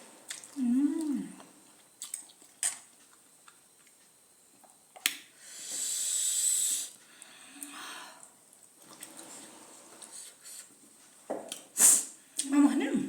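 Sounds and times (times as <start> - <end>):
breath hissing through teeth: 5.4 - 7.0, 11.8 - 12.2.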